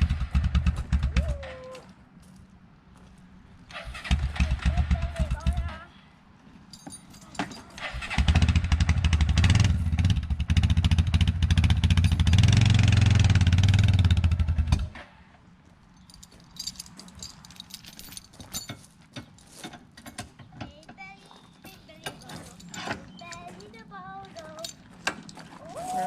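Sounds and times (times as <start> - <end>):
vehicle engine running: 0.0 - 1.4, 3.7 - 5.9, 7.8 - 15.1.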